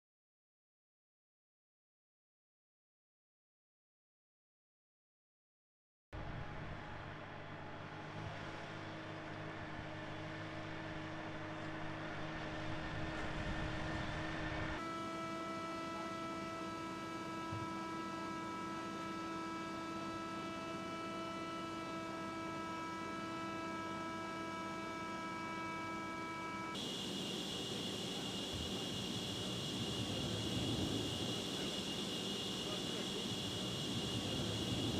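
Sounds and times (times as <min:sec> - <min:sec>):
jet engine whining: 0:12.6 - 0:34.9.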